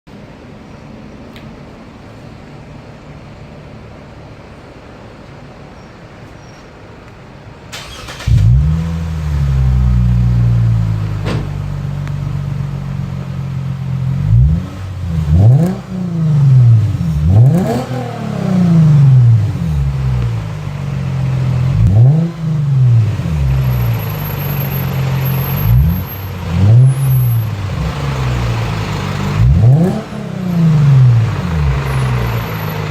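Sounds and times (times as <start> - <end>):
car engine starting: 7.6 - 32.9
car engine idling and revving: 7.8 - 32.9.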